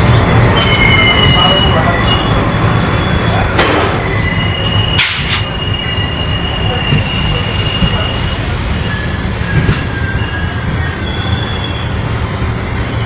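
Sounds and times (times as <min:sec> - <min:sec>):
train rumbling: 0:00.0 - 0:13.0
train wheels squealing: 0:00.0 - 0:13.0
train knock: 0:06.9 - 0:10.8.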